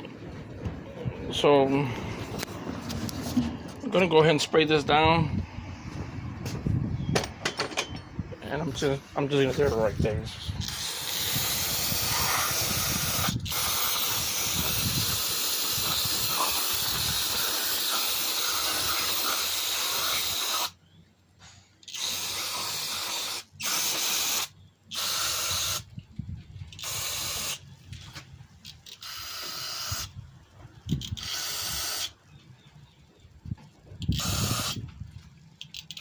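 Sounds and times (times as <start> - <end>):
aerosol can spraying: 10.6 - 20.8, 22.0 - 25.9, 26.8 - 27.6, 34.1 - 34.8.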